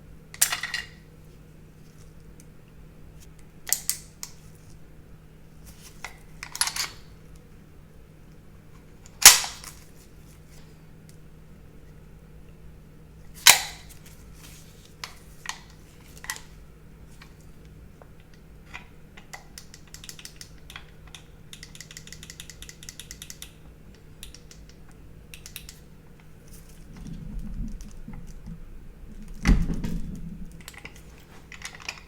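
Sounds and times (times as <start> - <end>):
pistol metal clicks and snaps: 3.7 - 4.4, 9.2 - 9.8, 19.2 - 23.6.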